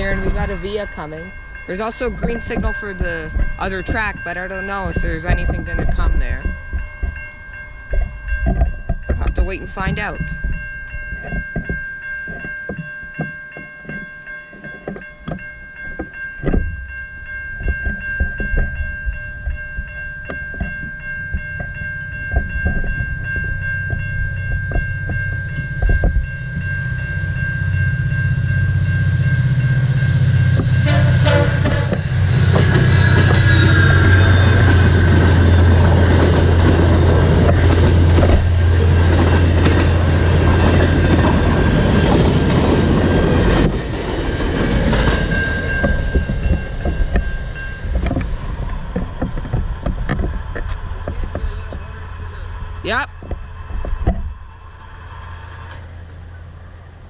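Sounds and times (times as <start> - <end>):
locomotive rumble: 0.0 - 57.0
railway crossing bells: 0.0 - 57.0
wheels clacking over rail joints: 0.0 - 57.0
train horn: 30.0 - 36.2.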